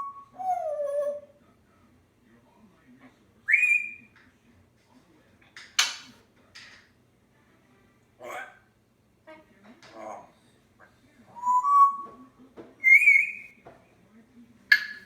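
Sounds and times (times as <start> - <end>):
parrot whistling: 0.0 - 1.3, 3.5 - 4.1, 11.4 - 12.2, 12.8 - 13.6
harsh noisy parrot sounds: 3.5 - 4.1, 12.8 - 13.6.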